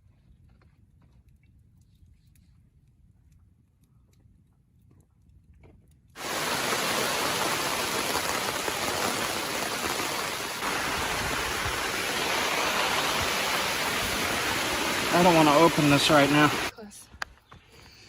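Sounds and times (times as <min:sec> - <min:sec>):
creek water rushing: 0:06.2 - 0:16.7.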